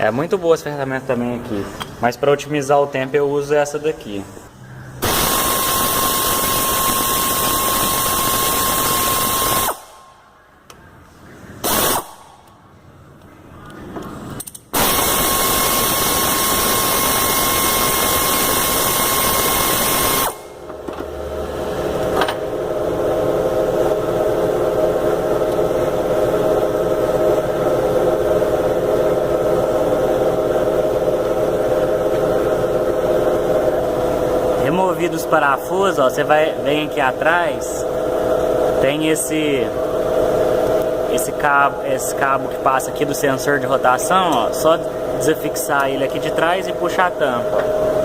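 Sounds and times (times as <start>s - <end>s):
pneumatic wrench whirring: 5.0s - 10.1s, 11.6s - 12.5s, 14.4s - 20.6s.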